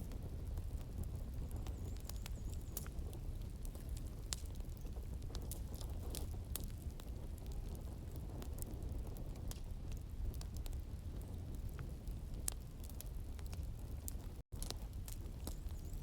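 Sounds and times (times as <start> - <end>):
wood fire crackling: 0.0 - 16.0.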